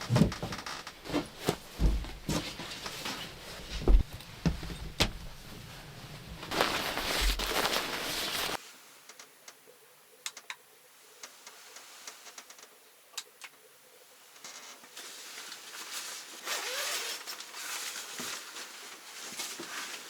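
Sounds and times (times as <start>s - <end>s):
loud rustling: 5.1s - 8.6s.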